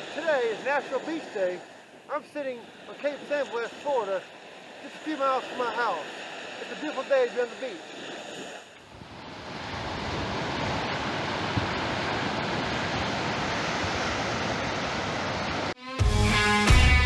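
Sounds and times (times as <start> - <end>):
surf washing onto beach: 0.0 - 15.8
wind on microphone: 8.2 - 15.8.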